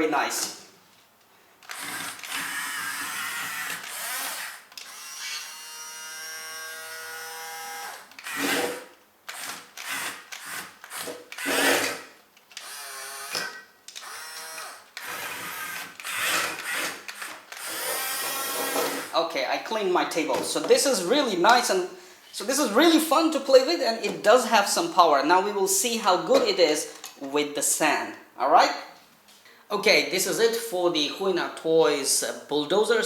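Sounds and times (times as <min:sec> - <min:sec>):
small electric motors whining: 0:01.7 - 0:12.0, 0:12.6 - 0:19.1.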